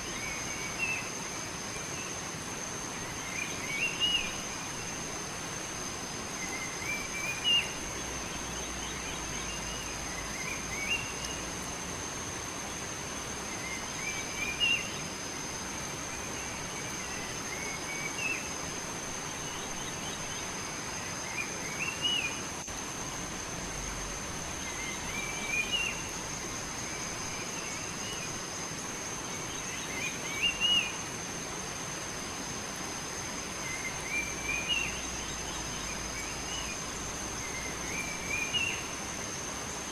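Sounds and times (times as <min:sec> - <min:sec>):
songbird singing: 0:00.0 - 0:11.8, 0:12.4 - 0:22.7, 0:23.6 - 0:31.2, 0:33.4 - 0:39.9
high-pitched insect whine: 0:00.0 - 0:39.9
outdoor background hiss: 0:00.0 - 0:39.9.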